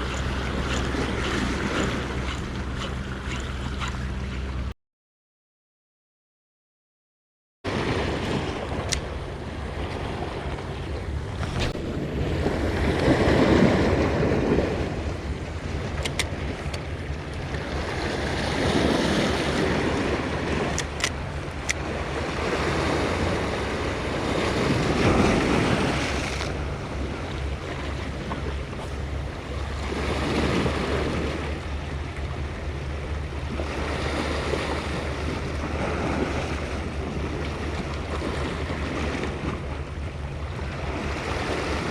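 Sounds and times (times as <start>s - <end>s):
sea waves washing on rocks: 0.0s - 3.2s, 11.4s - 32.2s
wind buffeting microphone: 0.0s - 4.7s, 7.8s - 41.9s.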